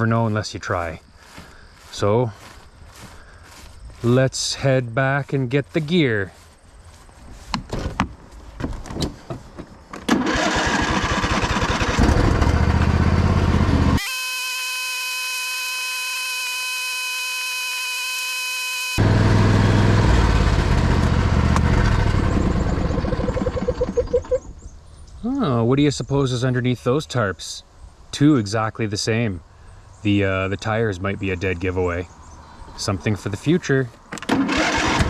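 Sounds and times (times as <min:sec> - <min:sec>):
footsteps: 0:01.2 - 0:04.4, 0:05.2 - 0:09.8
small vehicle engine running: 0:10.1 - 0:24.1
high pitched hum: 0:14.0 - 0:19.5.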